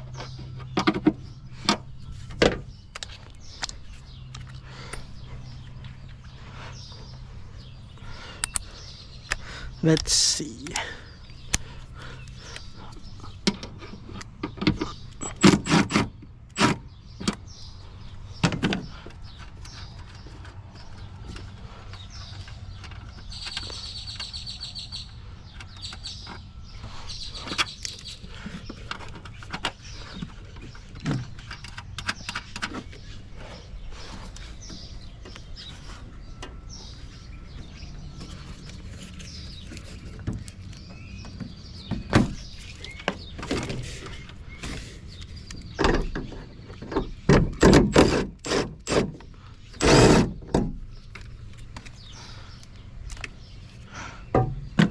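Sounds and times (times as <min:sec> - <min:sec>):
steady low hum: 0:03.4 - 0:12.8.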